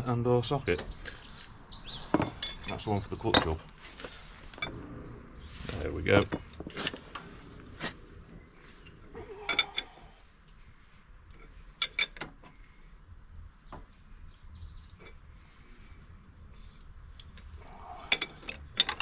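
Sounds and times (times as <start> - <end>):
bird chirps: 0.6 - 3.6, 4.6 - 9.5
metal tools clinking on engine parts: 2.1 - 3.6, 11.4 - 12.4, 18.0 - 19.0.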